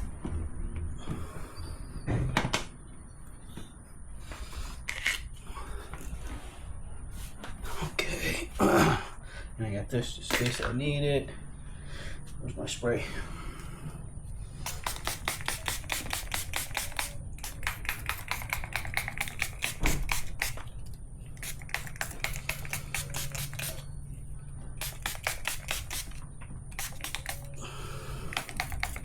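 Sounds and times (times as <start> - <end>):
spray bottle squirts: 14.6 - 20.7, 21.3 - 23.9, 24.8 - 27.6, 28.2 - 29.0.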